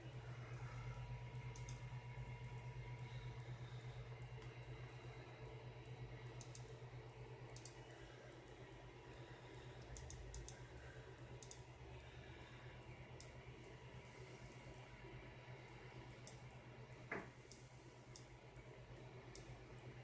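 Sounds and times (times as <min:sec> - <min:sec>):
low hum: 0:00.0 - 0:20.0
faint clicks: 0:01.4 - 0:01.9, 0:05.8 - 0:06.8, 0:07.5 - 0:08.6, 0:09.8 - 0:10.6, 0:11.4 - 0:11.7, 0:17.5 - 0:18.3.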